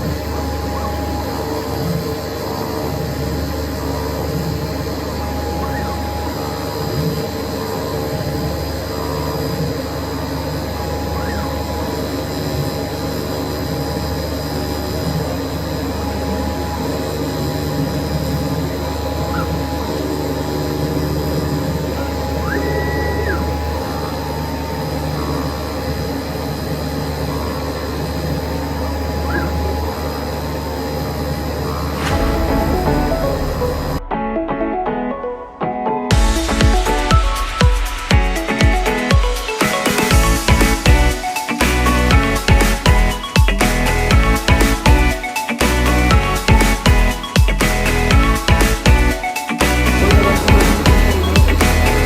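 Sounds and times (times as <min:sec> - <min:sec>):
machine whines: 0:00.0 - 0:42.2
cutting machine humming: 0:49.8 - 0:52.0.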